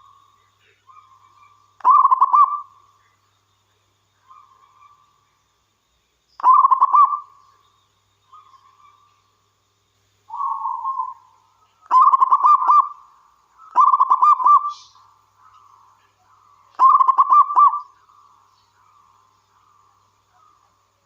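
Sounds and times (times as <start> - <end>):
dove cooing: 0.9 - 2.7, 6.4 - 7.3, 10.3 - 11.3, 11.9 - 13.0, 13.7 - 14.9, 16.8 - 17.9.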